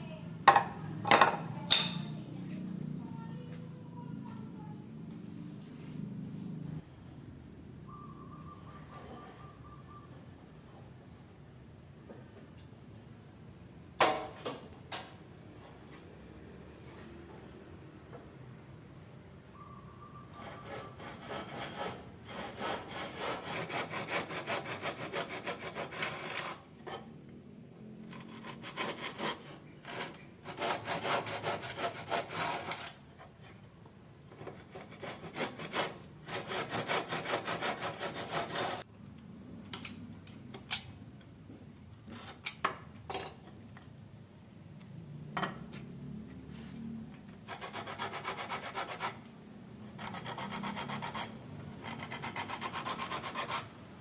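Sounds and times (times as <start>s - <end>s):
tool rasping on wood: 20.4s - 26.6s, 28.1s - 33.0s, 34.5s - 38.8s, 47.5s - 49.2s, 50.0s - 53.7s.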